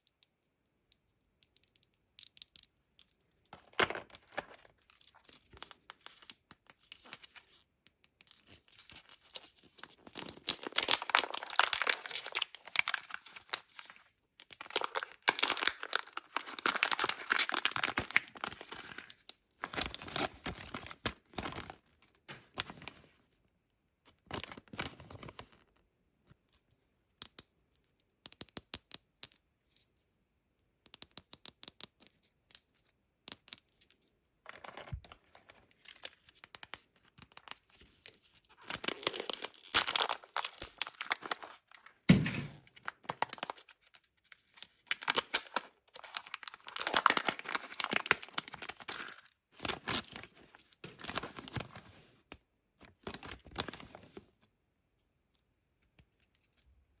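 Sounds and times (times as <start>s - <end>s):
small plastic clicks: 0.0s - 4.5s, 30.8s - 32.6s
wrappers tearing and crinkling: 10.1s - 14.0s, 14.6s - 21.7s, 38.6s - 42.2s, 44.9s - 51.6s
sharp thump: 42.1s - 42.6s.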